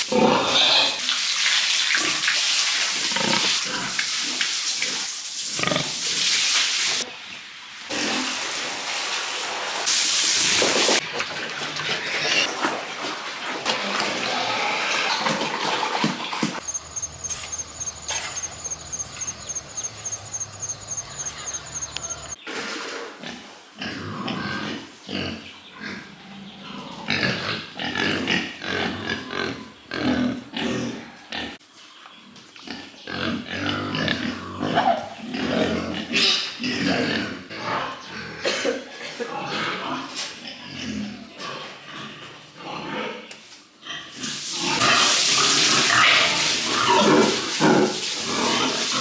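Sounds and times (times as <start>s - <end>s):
pigs grunting: 0.1s - 1.0s, 3.0s - 3.9s, 16.6s - 22.4s
faint fast ticking: 16.6s - 22.4s.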